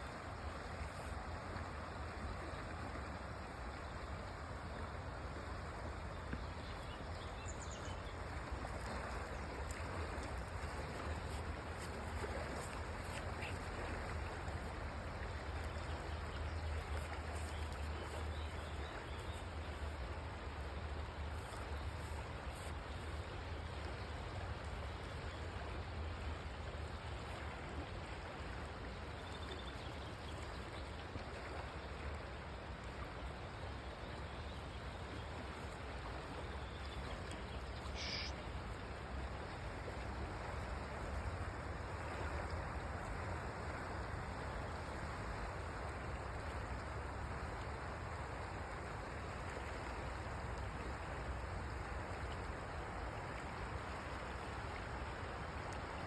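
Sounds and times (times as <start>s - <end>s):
flowing water rushing: 0.0s - 56.0s
brief high squeak: 38.0s - 38.4s.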